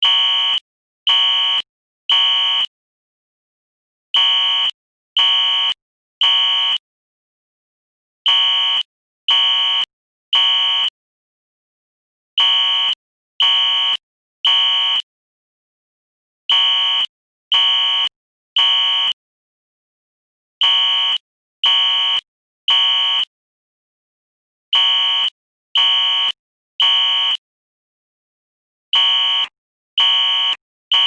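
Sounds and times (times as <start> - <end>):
fire alarm horn blasts: 0.0 - 2.7, 4.1 - 6.8, 8.2 - 11.0, 12.4 - 15.1, 16.5 - 19.2, 20.6 - 23.3, 24.7 - 27.4, 28.9 - 31.0.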